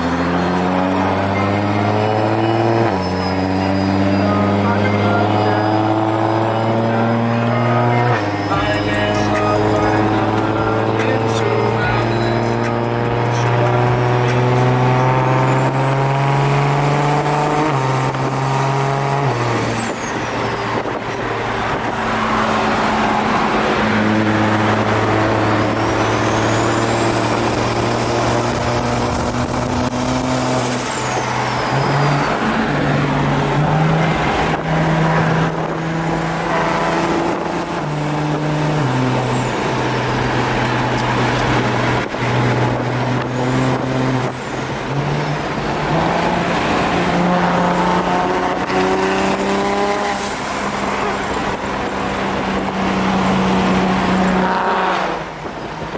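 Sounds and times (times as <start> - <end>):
car driving on road: 0.0 - 55.9
rap song playing: 4.1 - 5.9, 6.6 - 15.6.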